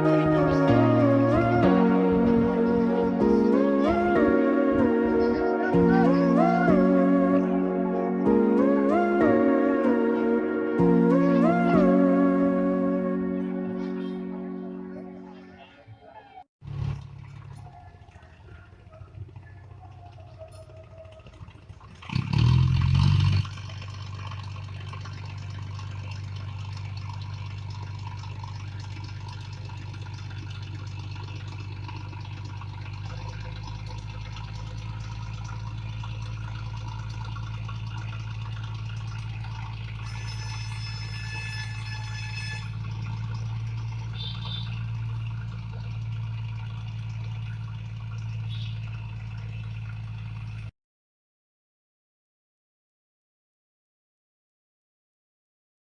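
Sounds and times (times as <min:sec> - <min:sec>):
diesel engine droning: 0:00.0 - 0:15.7, 0:16.6 - 0:50.7
brief high-pitched tone: 0:40.0 - 0:42.8.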